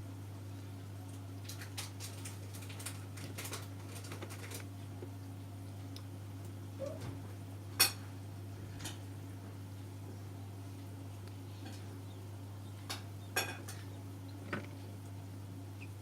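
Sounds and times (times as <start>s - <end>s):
incubator humming: 0.0s - 16.0s.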